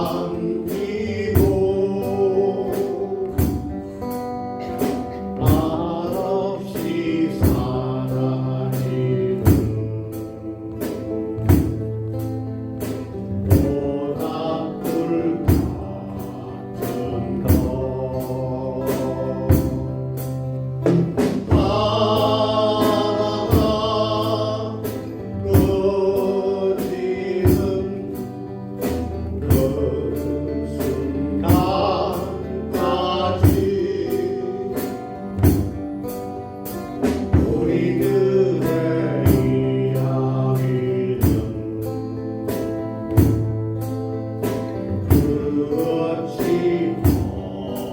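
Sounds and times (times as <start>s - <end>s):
group of voices singing: 0.0s - 36.1s, 36.7s - 43.6s, 44.4s - 47.9s
bass: 0.0s - 47.9s
drum beat: 4.6s - 8.0s, 20.8s - 26.0s.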